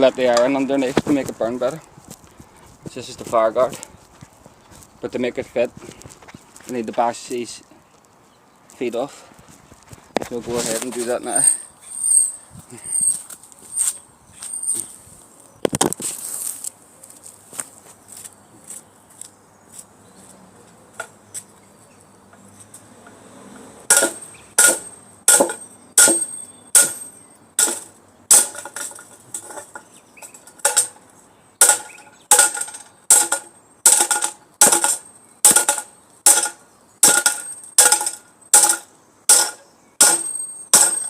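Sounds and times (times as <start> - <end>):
ringing metal strikes: 23.9 - 31.0, 31.6 - 41.0.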